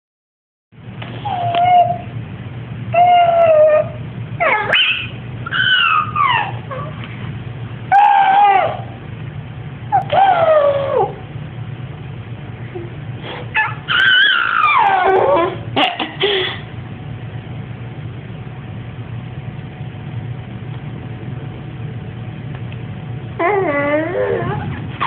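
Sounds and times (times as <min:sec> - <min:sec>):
steady low hum: 0:00.8 - 0:25.0
high-pitched squealing and yelps: 0:01.2 - 0:02.1, 0:02.9 - 0:07.1, 0:07.9 - 0:09.0, 0:09.9 - 0:11.2, 0:13.5 - 0:15.7, 0:23.4 - 0:25.0.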